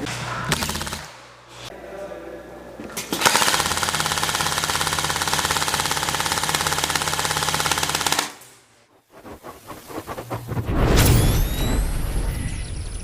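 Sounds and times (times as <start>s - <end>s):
airsoft gun firing full-auto: 3.2s - 8.4s.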